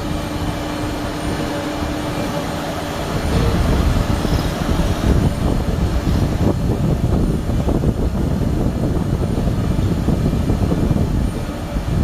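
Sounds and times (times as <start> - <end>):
milling machine rumbling: 0.0 - 12.0.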